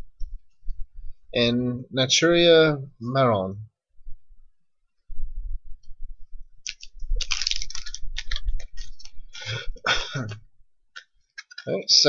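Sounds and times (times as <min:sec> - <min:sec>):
foil wrapper crinkling: 0:06.7 - 0:09.2
foil wrapper handling bumps: 0:06.7 - 0:09.2.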